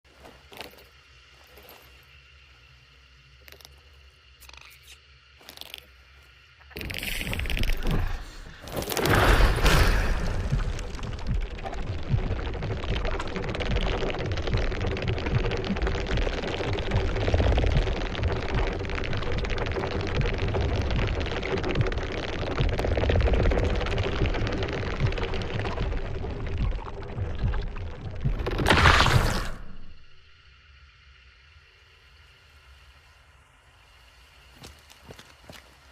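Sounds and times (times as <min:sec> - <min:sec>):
low hum: 0:00.0 - 0:35.2
dense crackling clicks: 0:06.6 - 0:30.6
low rumble: 0:06.8 - 0:30.9.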